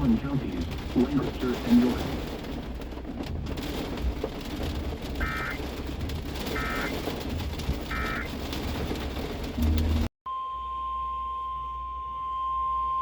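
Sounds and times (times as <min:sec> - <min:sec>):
low hum: 0:09.5 - 0:11.7.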